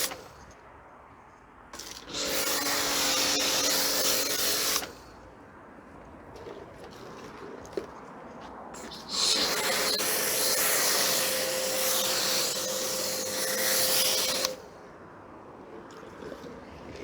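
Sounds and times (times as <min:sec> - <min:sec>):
pressure washer spraying: 0:02.1 - 0:04.9, 0:08.8 - 0:14.6.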